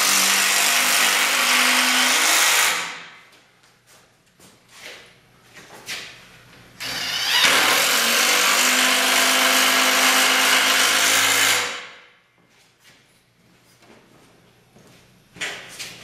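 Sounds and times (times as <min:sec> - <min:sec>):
power drill driving a screw: 0:06.8 - 0:11.8.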